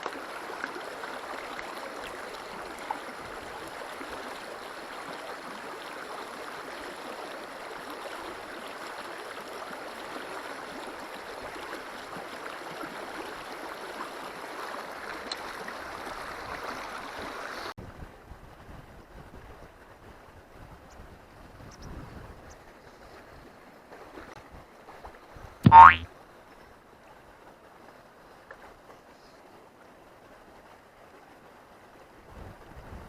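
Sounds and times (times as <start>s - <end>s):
wind rumble on microphone: 17.8s - 23.4s, 32.2s - 33.0s.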